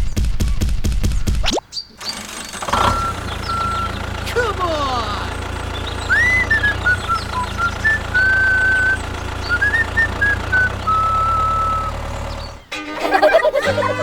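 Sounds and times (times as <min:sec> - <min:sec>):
low engine hum: 0:02.0 - 0:14.0
wavering whistle-like melody: 0:02.8 - 0:04.0, 0:05.8 - 0:14.0.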